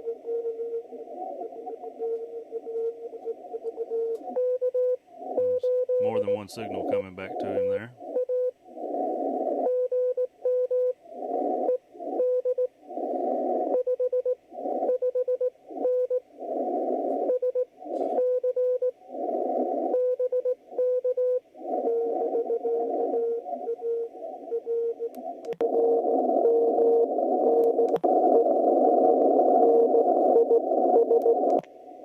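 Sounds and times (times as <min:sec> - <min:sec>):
morse code tone: 0:00.0 - 0:08.5, 0:19.9 - 0:31.6
radio hiss: 0:05.4 - 0:08.0, 0:16.4 - 0:18.2.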